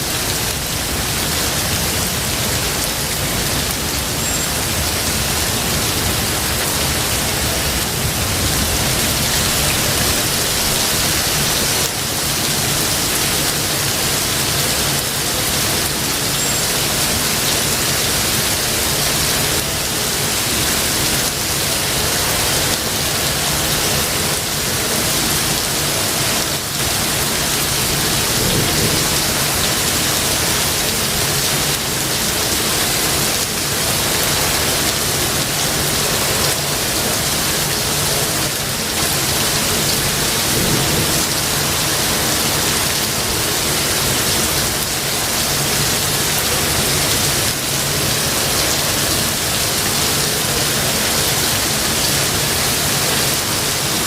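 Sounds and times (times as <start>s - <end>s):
steady rain falling: 0.0s - 54.0s
low rumbling thunder: 27.6s - 30.3s, 40.2s - 42.2s.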